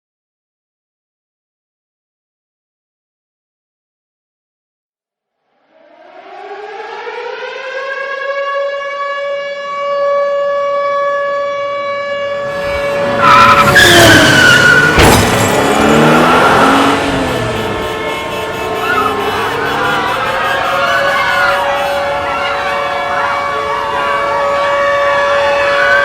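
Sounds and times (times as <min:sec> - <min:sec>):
warning siren wailing: 0:05.6 - 0:26.0.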